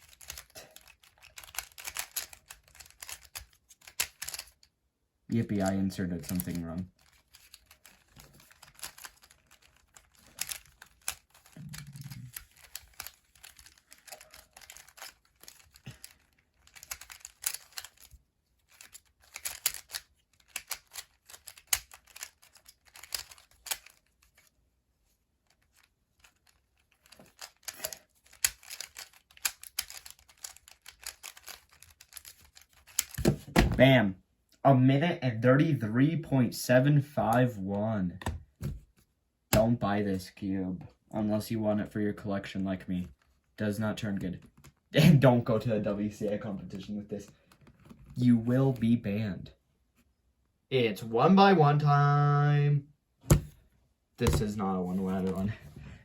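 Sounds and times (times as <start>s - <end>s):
puzzle cube clicking: 0.0s - 4.7s, 6.2s - 24.5s, 25.5s - 33.4s.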